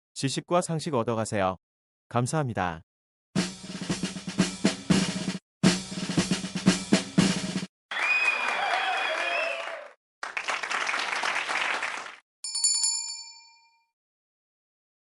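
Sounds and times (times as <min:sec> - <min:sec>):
crowd cheering and applause: 0:07.9 - 0:12.2
bell ding: 0:12.4 - 0:13.9.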